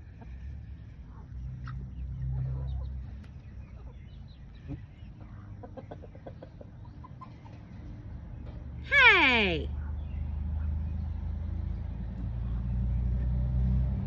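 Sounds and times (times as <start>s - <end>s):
bird clucking calls: 1.1s - 7.8s.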